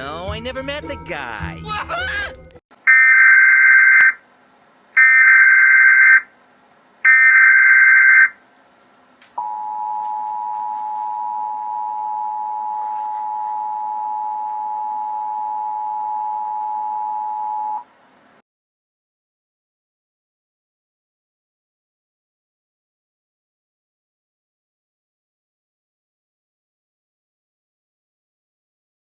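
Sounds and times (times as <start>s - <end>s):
data tone bursts: 2.9s - 4.2s, 5.0s - 6.2s, 7.1s - 8.4s, 9.4s - 17.8s
two-tone attention signal: 9.4s - 17.8s.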